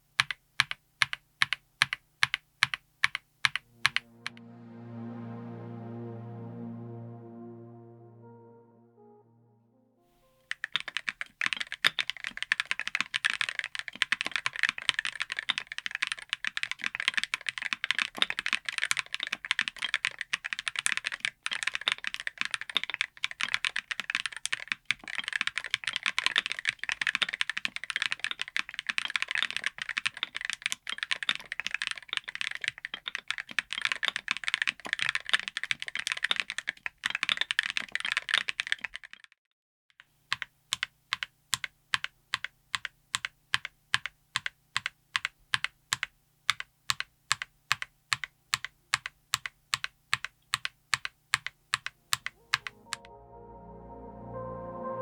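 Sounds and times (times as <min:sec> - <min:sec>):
clacky keyboard typing: 0:00.0 - 0:04.0, 0:10.4 - 0:39.4, 0:40.3 - 0:52.8
background music: 0:03.6 - 0:10.8, 0:52.0 - 0:55.0.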